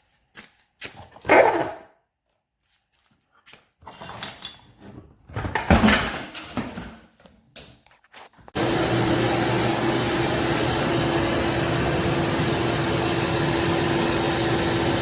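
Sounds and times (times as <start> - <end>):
dog barking: 1.2 - 2.0.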